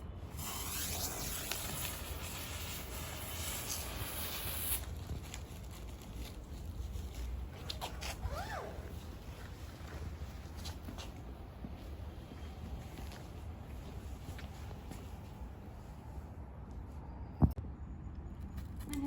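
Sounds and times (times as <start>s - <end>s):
smoke firework hissing: 0.2s - 5.5s.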